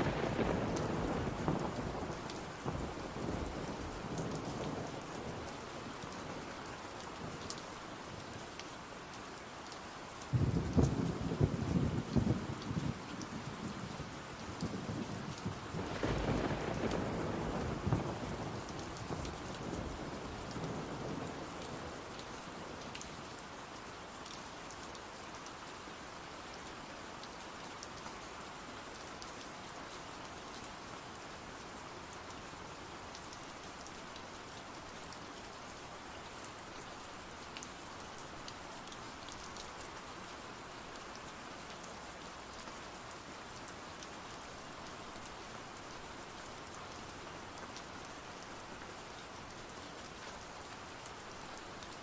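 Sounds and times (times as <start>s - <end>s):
steady rain: 0.0s - 52.0s
low thunder rumble: 10.3s - 13.0s, 14.7s - 19.3s.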